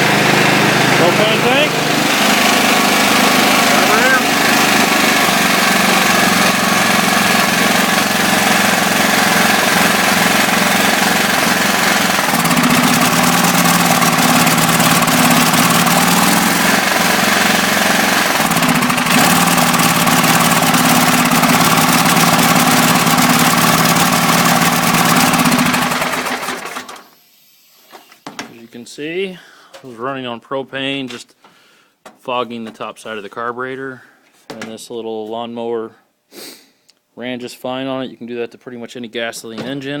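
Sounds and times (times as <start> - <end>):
small lawn mower engine: 0.0 - 27.2.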